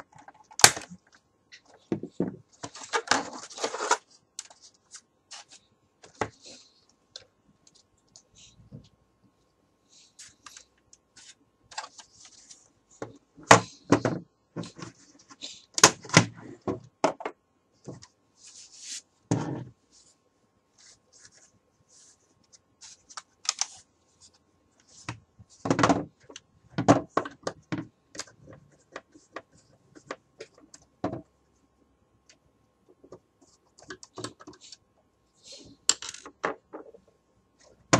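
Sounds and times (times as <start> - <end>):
plastic parts clicking and knocking: 0.0 - 4.6, 13.0 - 18.1, 25.0 - 31.3, 32.2 - 34.8, 35.5 - 37.1.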